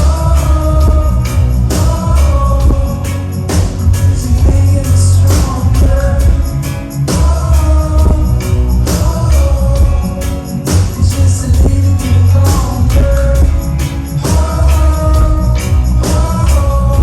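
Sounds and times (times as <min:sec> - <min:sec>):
heavy pulsing bass line: 0:00.0 - 0:17.0
person singing: 0:00.0 - 0:17.0
reggae band playing live: 0:00.0 - 0:17.0.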